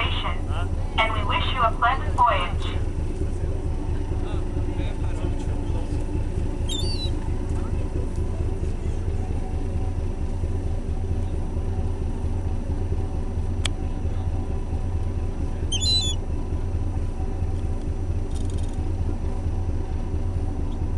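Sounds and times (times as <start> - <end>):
ship engines rumbling: 0.0 - 20.9
gull call: 6.7 - 7.2, 15.7 - 16.2.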